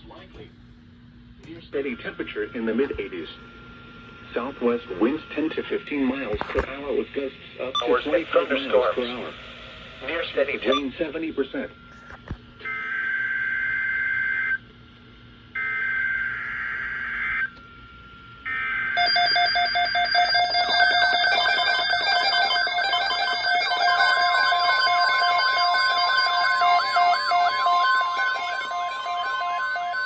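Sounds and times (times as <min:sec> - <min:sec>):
alert radios beeping and warbling: 0:01.5 - 0:11.9, 0:18.6 - 0:30.0
warbling data tone bursts: 0:19.0 - 0:30.0.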